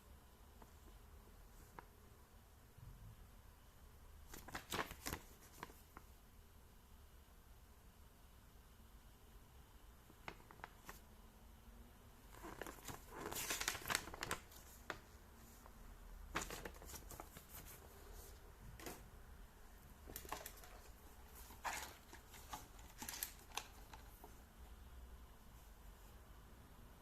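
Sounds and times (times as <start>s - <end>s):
packaging crinkling: 12.3s - 15.0s, 20.0s - 24.3s.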